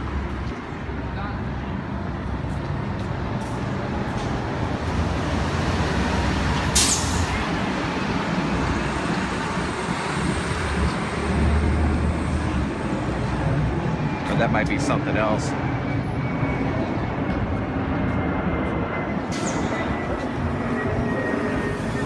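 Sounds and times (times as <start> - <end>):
traffic rumble: 0.0 - 22.0
heavy vehicle passing: 2.3 - 16.9.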